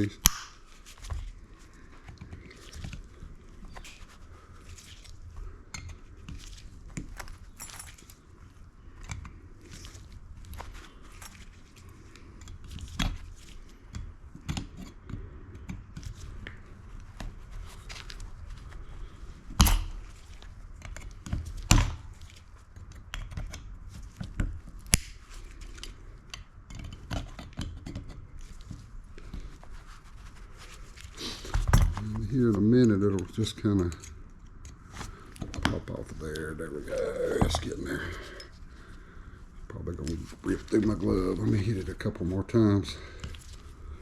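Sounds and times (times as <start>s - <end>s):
pliers scraping and clicking on metal: 0.0s - 0.8s, 19.5s - 22.2s.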